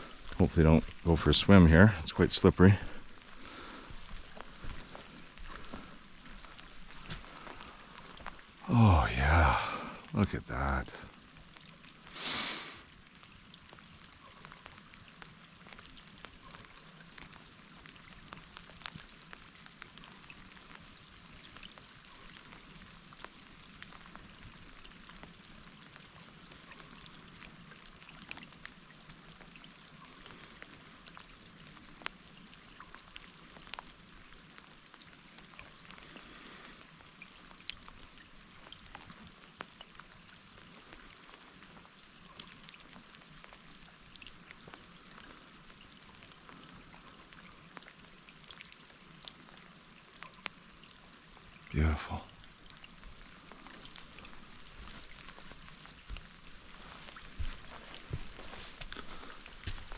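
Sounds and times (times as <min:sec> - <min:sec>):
rain on leaves: 0:00.0 - 0:59.9.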